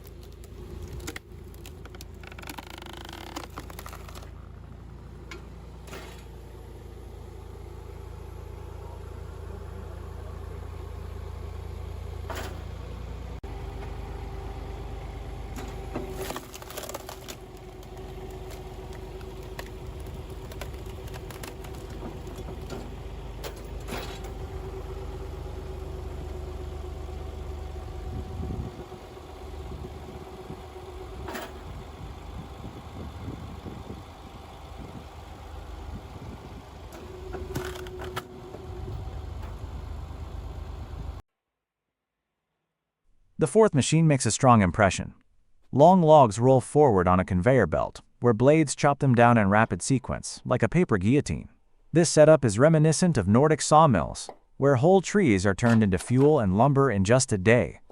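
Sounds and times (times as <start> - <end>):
logs knocking and cracking: 0.0 - 4.4, 15.5 - 24.5
wood splitter motor humming: 0.0 - 41.2.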